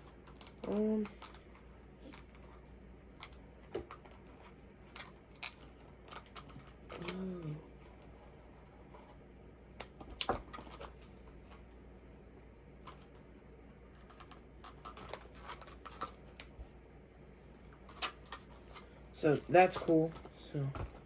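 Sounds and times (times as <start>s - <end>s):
toy packaging clicks and scratches: 0.0s - 8.5s, 9.7s - 11.6s, 12.8s - 16.6s, 17.7s - 20.4s.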